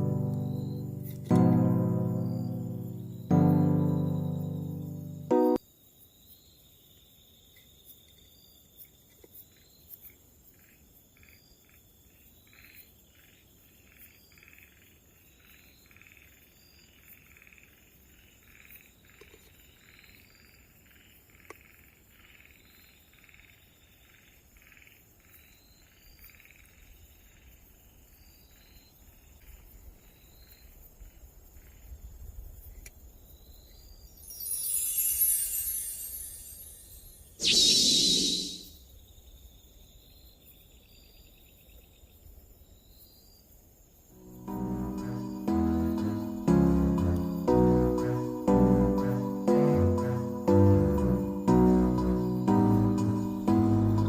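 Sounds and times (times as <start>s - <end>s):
insect trill: 0.0s - 54.0s
short chirp: 34.3s - 38.8s
frog calling: 37.4s - 38.8s
loud whoosh: 37.4s - 38.8s.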